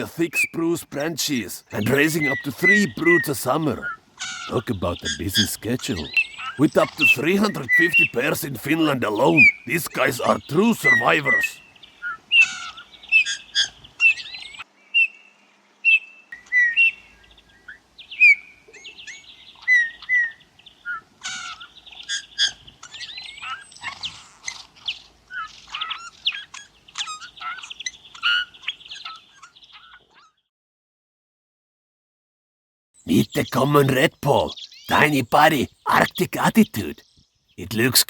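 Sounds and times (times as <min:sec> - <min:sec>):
bullfinches calling: 0:00.0 - 0:15.2, 0:33.0 - 0:38.0.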